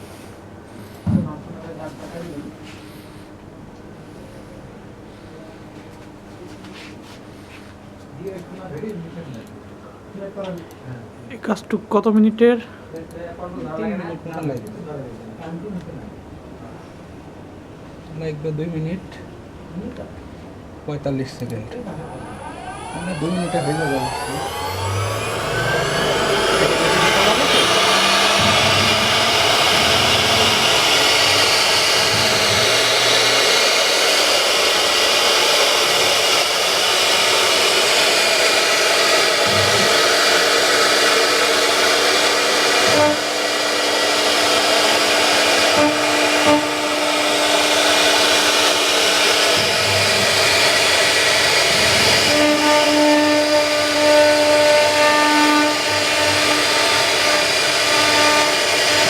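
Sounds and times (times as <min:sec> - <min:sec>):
steady pitched tones: 0:20.8 - 0:59.0
router spindle hissing in wood: 0:22.1 - 0:59.0.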